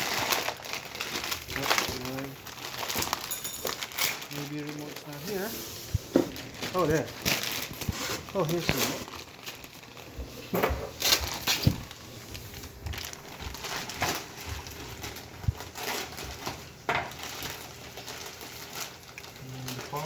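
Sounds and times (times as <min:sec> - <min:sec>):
packaging rustling and crinkling: 0:00.0 - 0:20.0.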